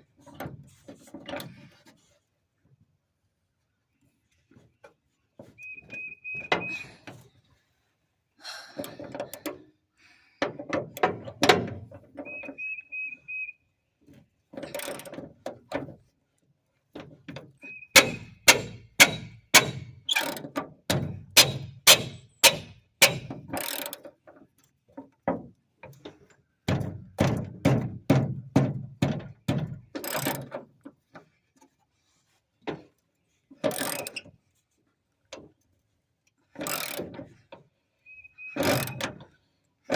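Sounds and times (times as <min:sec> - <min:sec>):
hand tools knocking on bolts: 0:18.0 - 0:24.0, 0:26.6 - 0:30.6.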